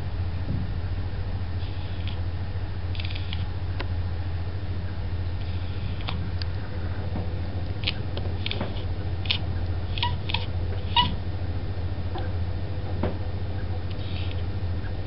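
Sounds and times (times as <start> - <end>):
low hum: 0.0 - 15.0
cat chattering: 9.2 - 11.2.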